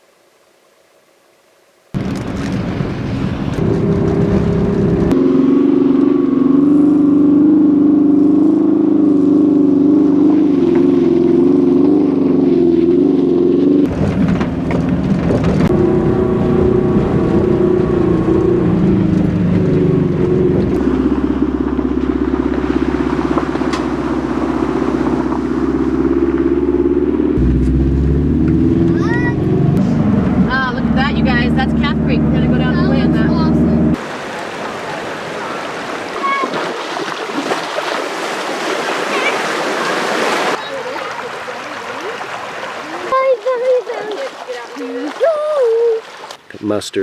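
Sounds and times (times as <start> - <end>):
van engine and road noise: 1.9 - 36.4.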